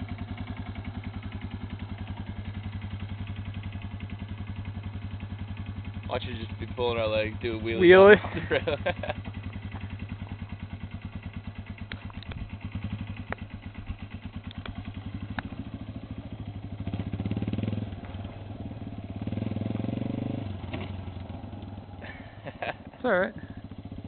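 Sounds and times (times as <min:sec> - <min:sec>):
motorcycle engine running and revving: 0:00.0 - 0:24.0
small clicks: 0:14.4 - 0:15.5.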